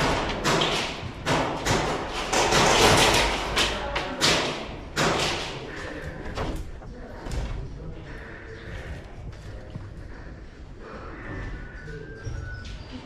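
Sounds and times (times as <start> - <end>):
irregular thumps and knocks: 0.0 - 7.8.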